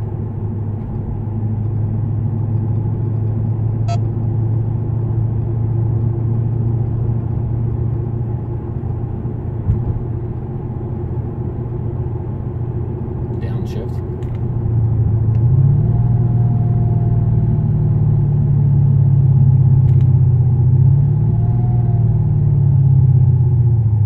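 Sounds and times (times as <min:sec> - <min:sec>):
car exhaust drone: 0:00.0 - 0:24.0
short thump: 0:09.6 - 0:10.0.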